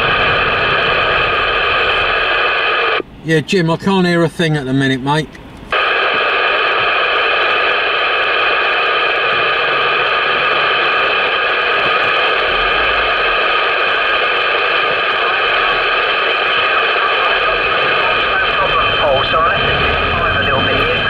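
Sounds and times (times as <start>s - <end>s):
radio static hiss: 0.0s - 21.0s.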